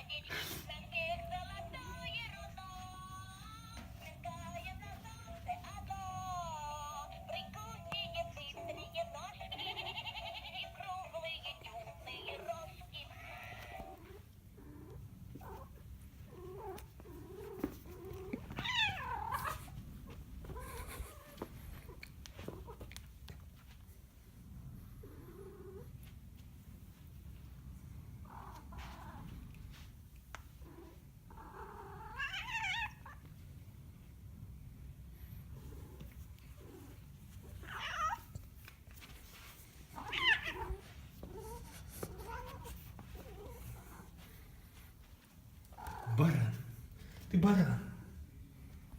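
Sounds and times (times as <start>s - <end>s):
cat meowing: 12.3s - 19.8s, 30.6s - 33.2s, 37.4s - 38.4s, 40.0s - 44.2s, 45.7s - 46.2s.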